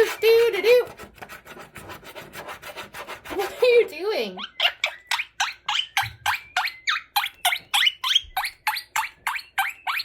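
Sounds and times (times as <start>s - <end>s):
parrot chirping: 4.1s - 10.0s.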